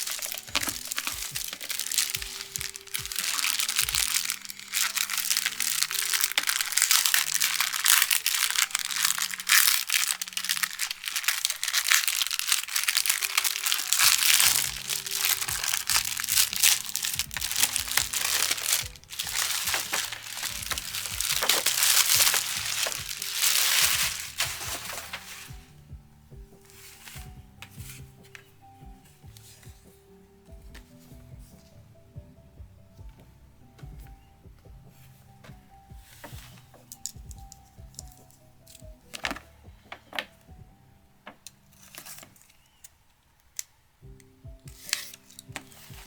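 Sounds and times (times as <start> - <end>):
packaging crinkling and rustling: 0.0 - 25.8, 35.4 - 40.6, 41.2 - 43.8, 44.7 - 46.0
background music: 0.0 - 46.0.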